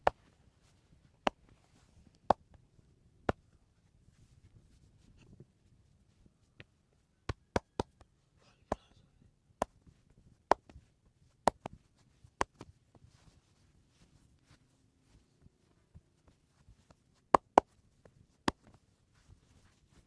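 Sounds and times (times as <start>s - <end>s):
soft rubbing: 0.0s - 2.3s, 3.4s - 7.2s, 9.8s - 20.0s
hand slaps on head: 7.3s - 8.1s.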